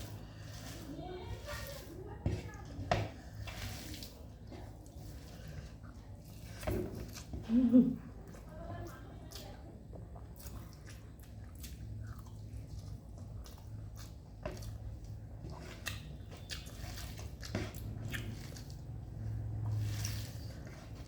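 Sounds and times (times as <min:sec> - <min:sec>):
chewing and biting food: 0:08.2 - 0:21.0.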